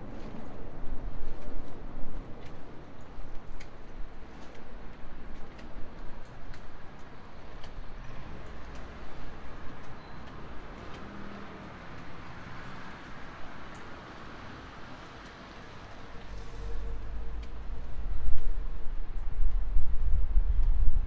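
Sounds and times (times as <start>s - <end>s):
faint ticks: 2.4s - 13.9s.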